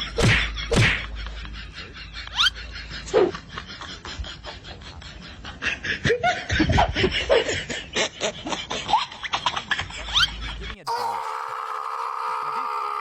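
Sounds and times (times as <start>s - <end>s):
people laughing: 0.0s - 13.0s.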